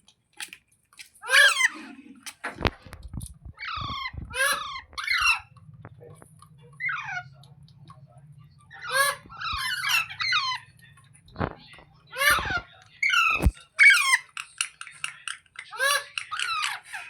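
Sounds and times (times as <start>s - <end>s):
parakeet squawking: 1.2s - 1.9s, 3.6s - 5.6s, 6.7s - 7.4s, 8.6s - 11.0s, 12.0s - 17.0s
low steady hum: 1.2s - 13.7s.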